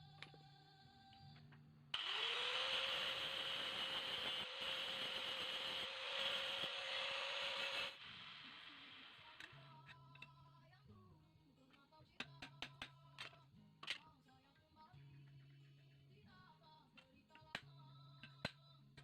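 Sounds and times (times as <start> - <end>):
electric grinder whining: 2.0 - 9.6
grinding hiss on steel: 2.7 - 9.4.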